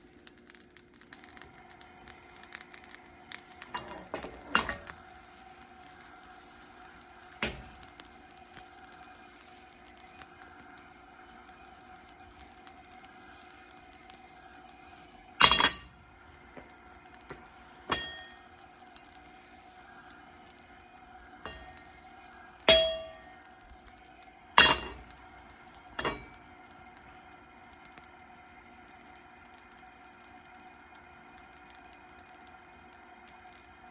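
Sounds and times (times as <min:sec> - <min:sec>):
pots and pans clinking: 0:03.6 - 0:05.1, 0:07.4 - 0:08.0, 0:15.3 - 0:16.7, 0:17.3 - 0:18.6, 0:21.4 - 0:23.6, 0:24.6 - 0:25.2, 0:25.8 - 0:26.5.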